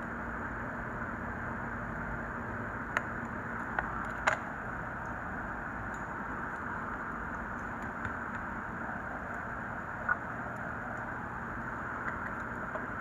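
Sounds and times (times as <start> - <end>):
rushing noise with low hum: 0.0 - 13.0.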